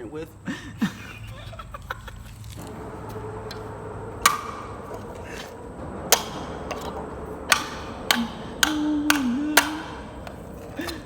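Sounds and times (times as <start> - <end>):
pliers striking metal can: 3.5 - 11.0.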